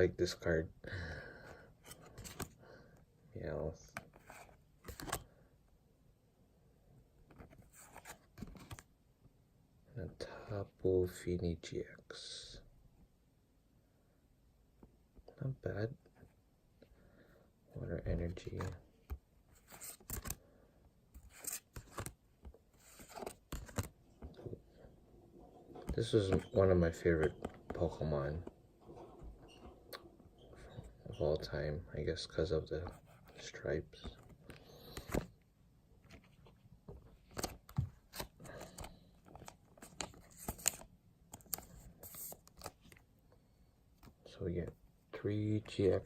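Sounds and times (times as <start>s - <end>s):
trading cards clicking and scraping: 1.8s - 2.5s, 3.9s - 5.2s, 19.6s - 20.4s, 21.2s - 22.2s, 22.8s - 24.4s, 37.3s - 43.0s.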